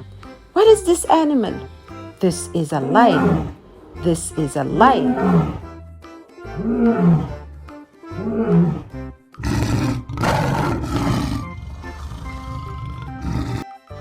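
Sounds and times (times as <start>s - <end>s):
light background music: 0.0s - 14.0s
lion roaring: 2.8s - 7.5s, 8.1s - 13.7s.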